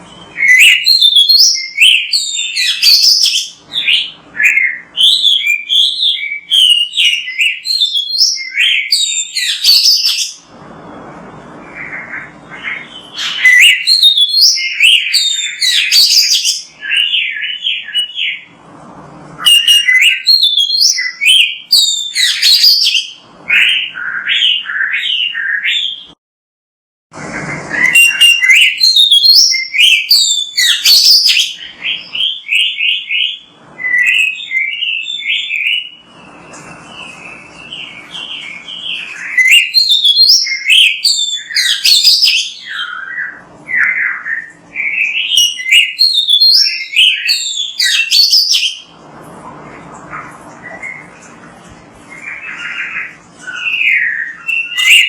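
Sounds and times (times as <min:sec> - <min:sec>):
bird singing whistles and chirps: 0:00.0 - 0:10.5, 0:11.4 - 0:18.5, 0:19.4 - 0:26.2, 0:27.4 - 0:48.9, 0:52.1 - 0:55.0.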